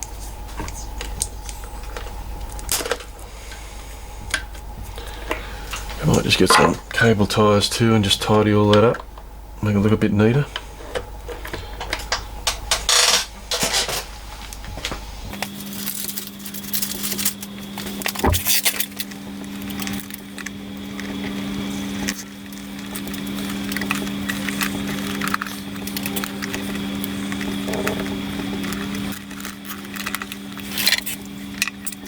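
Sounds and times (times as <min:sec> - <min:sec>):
clicks rustles and crackles: 0:00.0 - 0:03.2, 0:14.4 - 0:32.0
steady low-pitched hum: 0:00.0 - 0:32.0.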